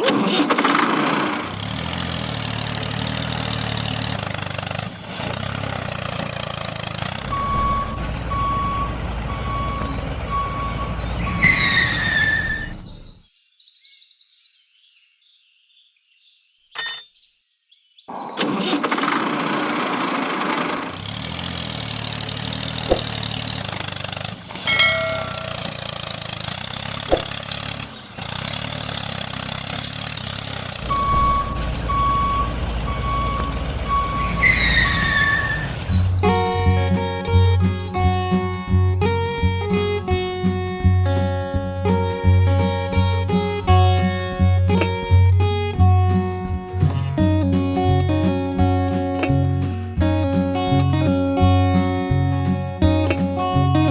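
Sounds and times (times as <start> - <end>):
truck engine running: 1.0 - 13.1, 20.6 - 39.6
short reversing beeps: 7.3 - 12.8, 30.8 - 35.9.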